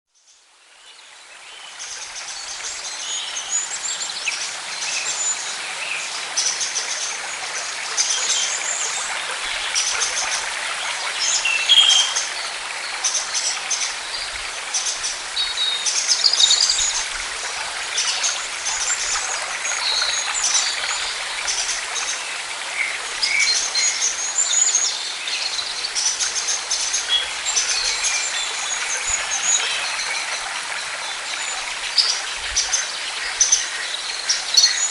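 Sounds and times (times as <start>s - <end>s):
outdoor ambience hiss: 0.2s - 34.9s
birds chirping and singing: 11.0s - 12.6s.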